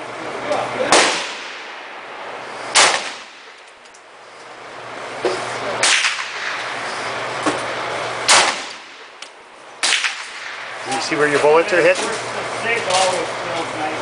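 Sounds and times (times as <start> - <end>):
rifle shots with echo: 0.9 - 2.0, 2.7 - 3.6, 5.8 - 6.8, 8.2 - 9.2, 9.8 - 10.8.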